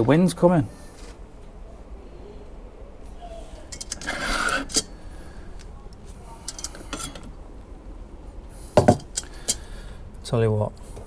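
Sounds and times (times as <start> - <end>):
metal clinks and taps: 6.5 - 7.3, 8.8 - 9.6.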